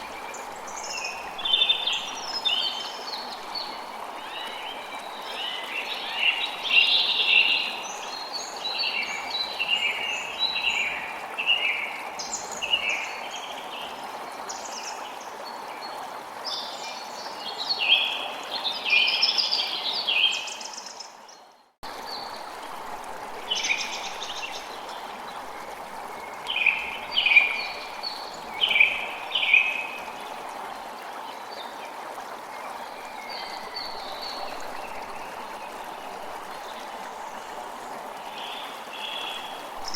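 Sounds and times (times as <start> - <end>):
rushing water: 0.0 - 39.9
songbirds calling: 23.4 - 39.9.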